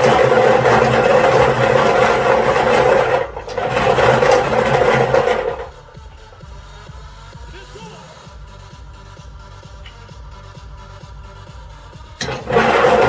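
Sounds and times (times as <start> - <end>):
plastic balls tumbling and rattling: 0.0 - 6.5, 12.2 - 13.0
blower motor humming: 0.0 - 13.0.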